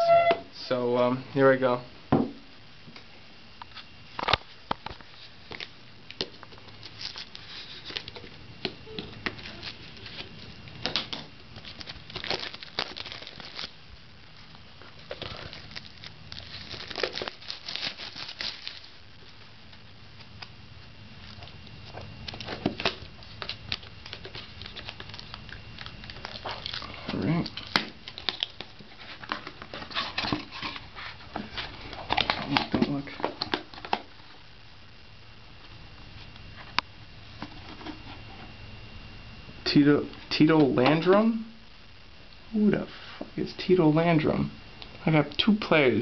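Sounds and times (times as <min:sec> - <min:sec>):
plastic wrapping crinkling and tearing: 0:03.6 - 0:34.4.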